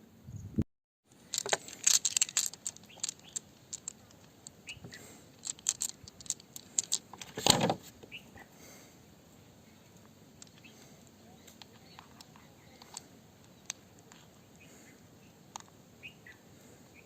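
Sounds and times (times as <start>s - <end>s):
small hard objects clicking together: 1.1s - 7.5s, 10.0s - 14.4s, 15.5s - 15.8s.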